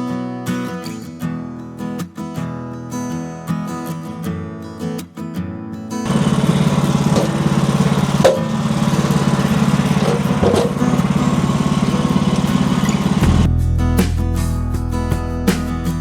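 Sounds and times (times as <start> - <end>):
small gasoline engine running: 6.1 - 13.5.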